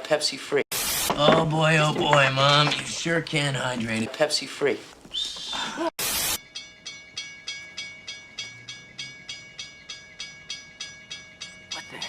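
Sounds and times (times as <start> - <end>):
static burst: 0.7 - 1.3, 6.0 - 6.4.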